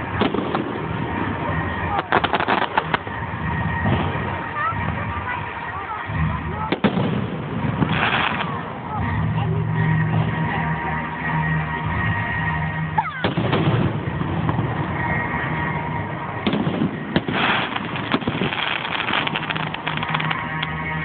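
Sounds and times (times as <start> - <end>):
fireworks bangs: 0.0 - 21.0
fireworks crackling: 0.0 - 21.0
music: 7.9 - 21.0.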